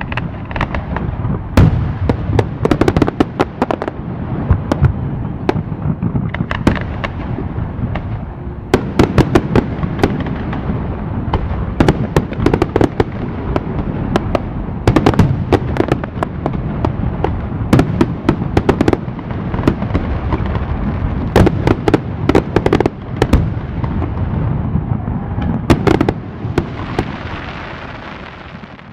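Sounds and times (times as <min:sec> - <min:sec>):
fireworks crackles and bangs: 0:00.0 - 0:28.9
fireworks rumble: 0:00.0 - 0:28.9.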